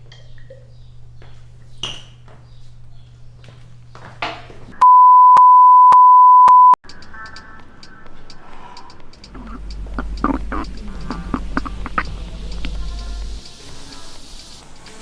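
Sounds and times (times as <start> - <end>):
high electronic bleep: 4.8 - 6.8
music: 6.8 - 15.0.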